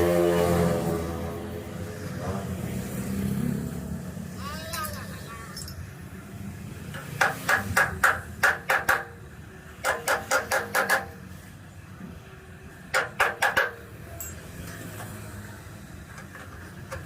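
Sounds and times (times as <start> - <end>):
hammer on sheet steel: 7.0 - 11.3, 12.9 - 14.3.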